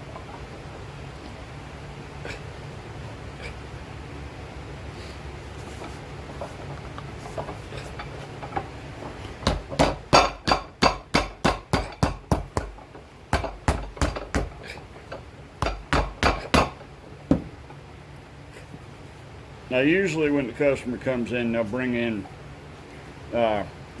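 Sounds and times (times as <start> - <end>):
hammer striking shoe sole: 15.6 - 17.5.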